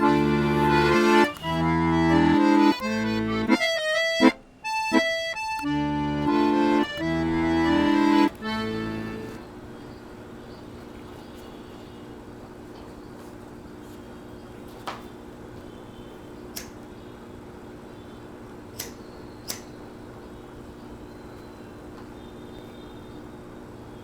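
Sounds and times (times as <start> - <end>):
background score music: 0.0 - 9.4.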